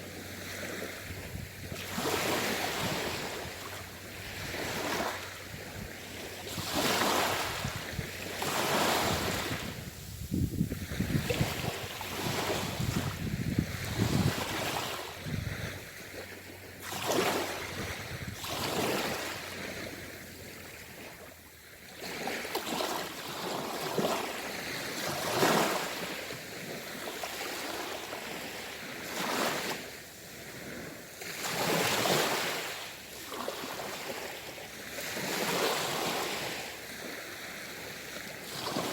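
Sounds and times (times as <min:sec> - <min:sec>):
sea waves washing in: 0:00.0 - 0:38.9.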